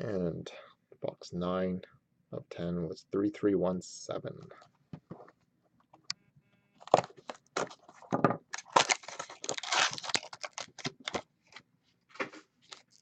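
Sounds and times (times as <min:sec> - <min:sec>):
wrapper tearing and crinkling: 0:08.5 - 0:11.2, 0:12.6 - 0:13.0.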